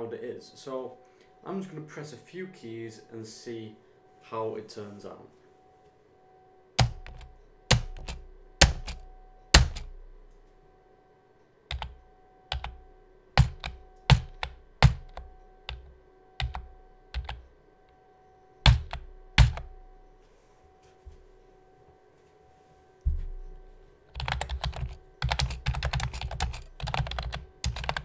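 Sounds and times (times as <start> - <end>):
keyboard keys clacking: 6.8 - 9.9, 11.7 - 12.8, 13.4 - 17.4, 18.6 - 19.7, 23.1 - 28.0.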